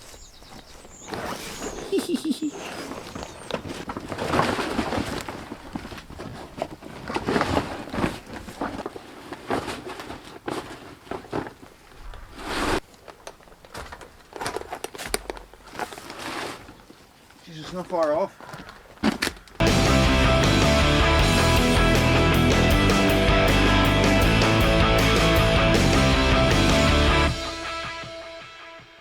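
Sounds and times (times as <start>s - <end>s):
roofing sheet scraping and knocking: 0.6s - 18.0s.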